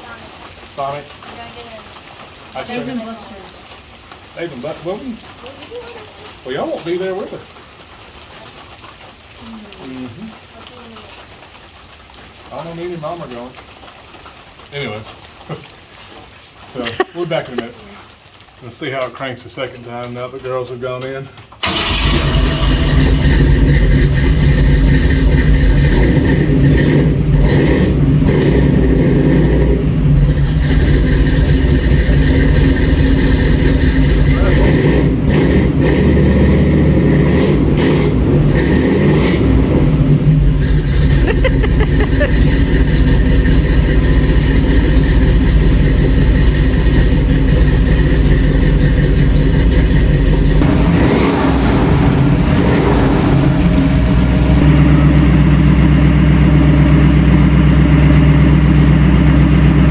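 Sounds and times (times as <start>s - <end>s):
car engine running loudly: 21.6s - 59.9s.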